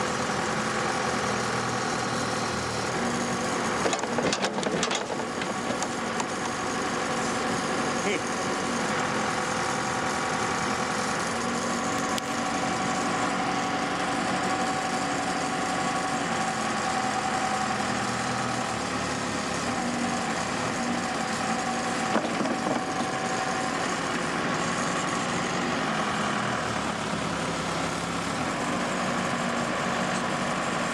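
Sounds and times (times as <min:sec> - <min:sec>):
diesel engine running: 0:00.0 - 0:30.9.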